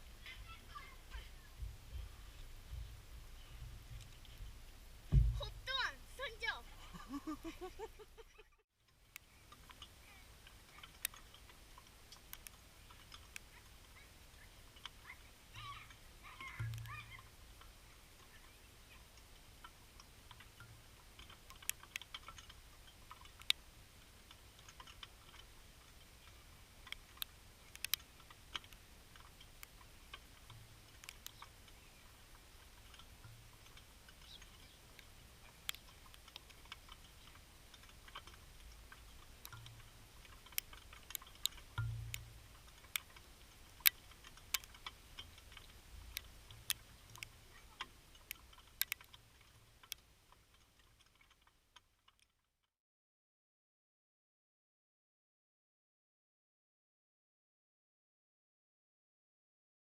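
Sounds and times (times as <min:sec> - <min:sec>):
soft low thump: 0:01.5 - 0:05.6
sharp clicks and ticks: 0:10.5 - 0:13.7, 0:16.4 - 0:17.0, 0:19.2 - 0:23.6, 0:26.8 - 0:31.7, 0:32.8 - 0:50.1.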